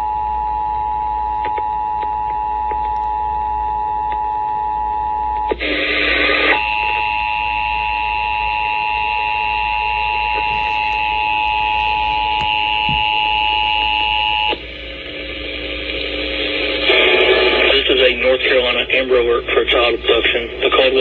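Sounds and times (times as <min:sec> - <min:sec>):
two-tone alarm: 0:06.2 - 0:14.7
harsh noise burst: 0:14.5 - 0:18.3.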